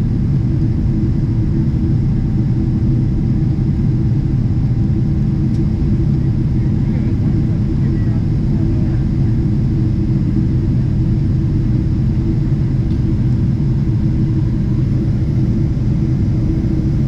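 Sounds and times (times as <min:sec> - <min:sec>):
airplane cabin engine rumble: 0:00.0 - 0:17.0.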